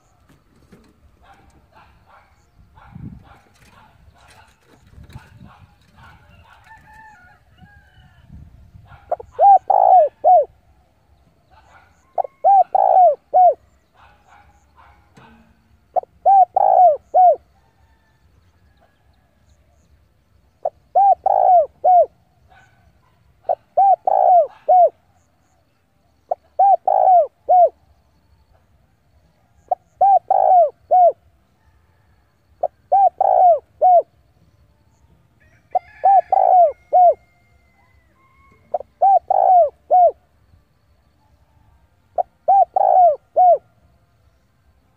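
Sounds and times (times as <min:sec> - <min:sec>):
dove cooing: 0:00.0 - 0:07.2, 0:08.8 - 0:10.6, 0:11.5 - 0:17.6, 0:20.6 - 0:22.8, 0:23.4 - 0:25.1, 0:26.3 - 0:27.9, 0:29.4 - 0:31.3, 0:31.9 - 0:34.3, 0:35.7 - 0:40.3, 0:42.2 - 0:43.7.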